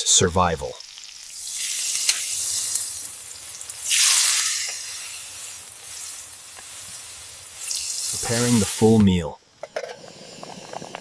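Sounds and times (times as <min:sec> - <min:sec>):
meat frying with sizzle: 0:00.6 - 0:09.0.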